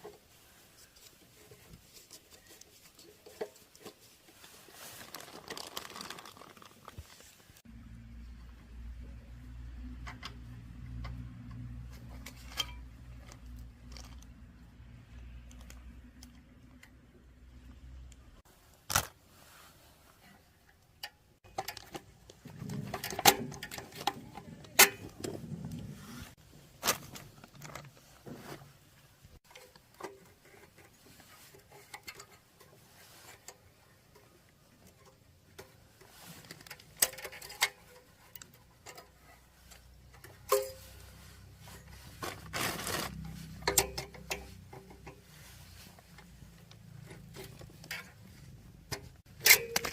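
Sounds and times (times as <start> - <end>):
tools and metal parts clicking: 21.0 - 25.4, 29.5 - 49.9
metal scraping: 36.1 - 49.9.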